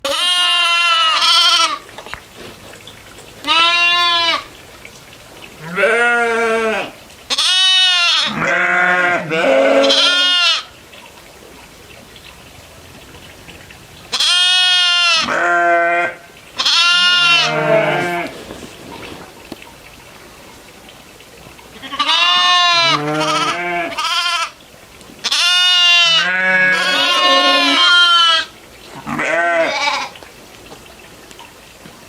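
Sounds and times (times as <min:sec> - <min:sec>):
goats bleating: 0:00.0 - 0:01.9, 0:03.4 - 0:04.5, 0:05.6 - 0:10.7, 0:14.1 - 0:18.4, 0:21.8 - 0:24.6, 0:25.2 - 0:30.2.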